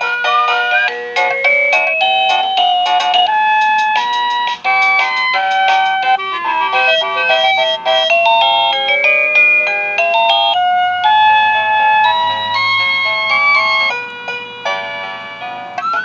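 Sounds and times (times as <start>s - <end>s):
electronic doorbell melody: 0.0s - 16.0s.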